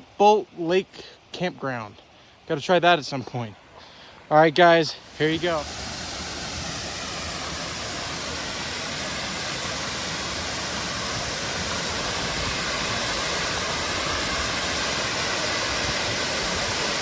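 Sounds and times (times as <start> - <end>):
waterfall roaring: 5.0 - 17.0.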